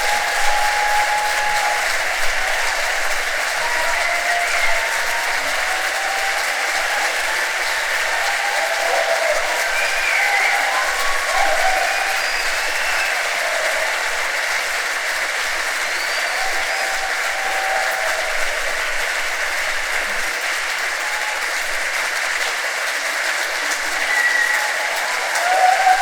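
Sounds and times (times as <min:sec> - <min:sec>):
audience applauding: 0:00.0 - 0:26.0.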